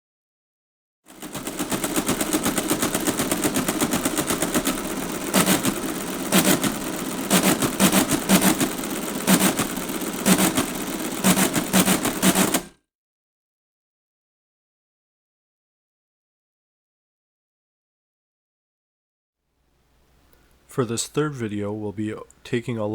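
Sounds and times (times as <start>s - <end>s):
rapid mechanical clicks: 1.1s - 12.8s
clattering clusters: 1.2s - 12.7s.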